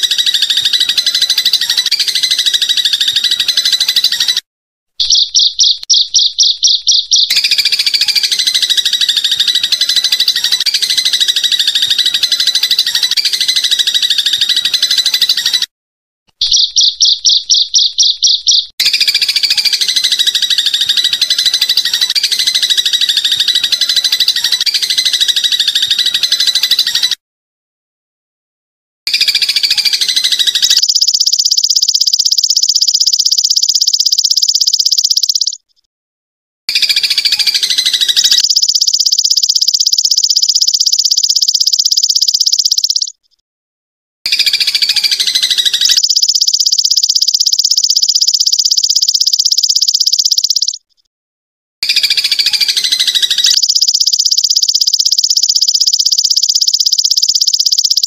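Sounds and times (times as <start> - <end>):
scratchy pulsed insect call: 5.0 - 14.5, 29.2 - 35.6, 36.8 - 43.2, 44.4 - 50.8, 52.0 - 58.0
insect pulsed trill: 29.2 - 35.6, 36.9 - 43.2, 44.4 - 50.8, 52.1 - 58.0.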